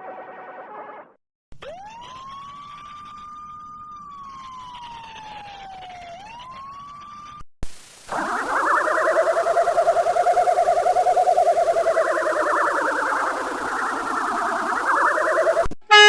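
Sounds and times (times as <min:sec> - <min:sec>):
multi-tone siren rising: 0:00.4 - 0:07.4, 0:08.1 - 0:16.0
siren wailing: 0:01.6 - 0:07.4, 0:08.1 - 0:16.0.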